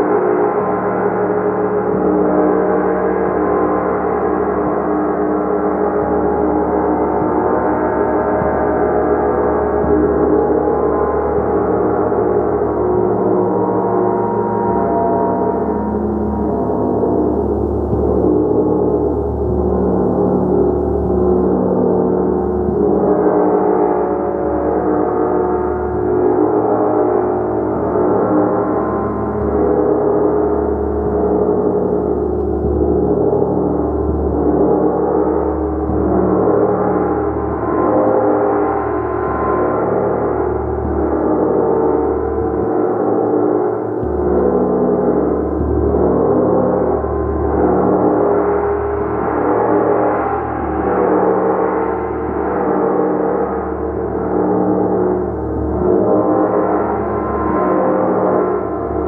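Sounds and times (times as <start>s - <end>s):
gong struck repeatedly: 0.0s - 59.0s.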